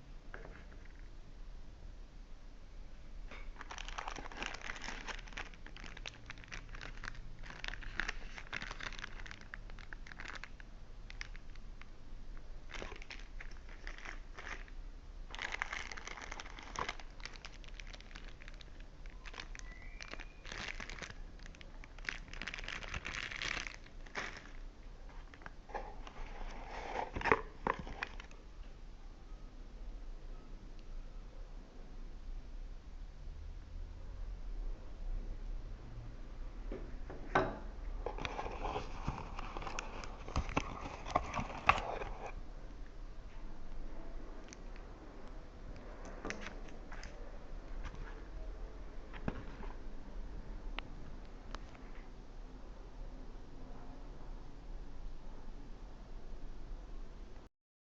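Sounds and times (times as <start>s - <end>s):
plastic packaging crinkling: 3.3s - 11.9s, 12.6s - 28.4s, 38.0s - 42.4s.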